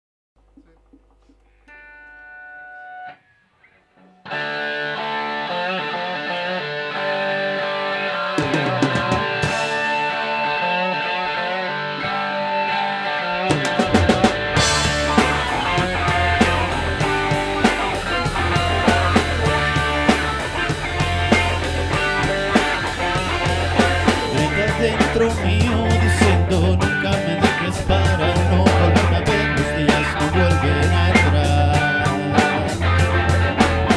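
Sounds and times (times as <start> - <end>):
distorted electric guitar: 0.4 - 33.9
instrumental rock music: 1.4 - 33.9
drum and cymbal hits: 13.6 - 33.9
held guitar chord: 13.9 - 26.8.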